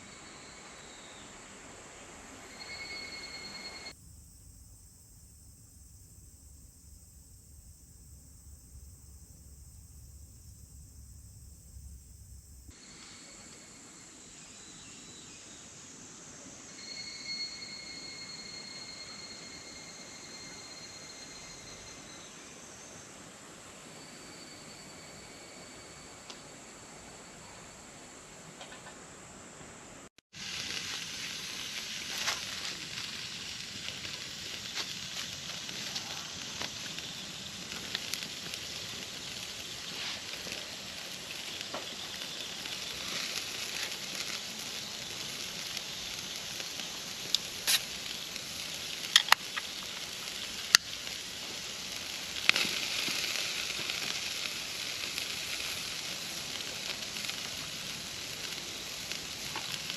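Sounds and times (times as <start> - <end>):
food sizzling in a pan: 0.1 - 4.0, 30.3 - 59.9
small crackles: 30.4 - 59.9.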